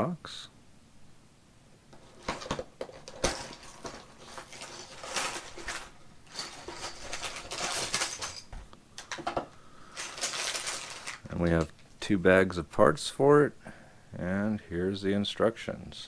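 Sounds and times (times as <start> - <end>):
plastic bricks clattering in bags: 2.0 - 11.8.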